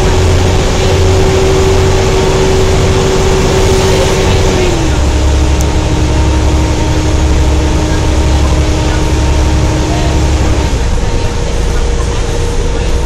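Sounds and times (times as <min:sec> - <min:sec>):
bus engine rumble: 0:00.0 - 0:13.0
loud steady bus whine: 0:00.0 - 0:13.0.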